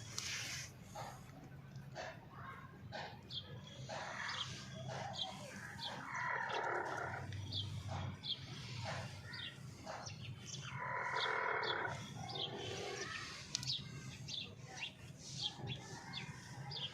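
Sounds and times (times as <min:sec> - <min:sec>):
hen squawking: 0:03.8 - 0:14.0.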